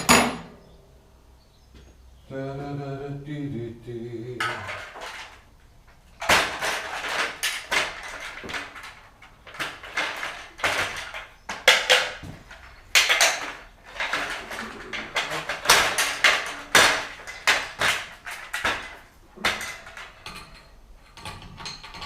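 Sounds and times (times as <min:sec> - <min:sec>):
metal tools clanking: 0:04.4 - 0:22.0.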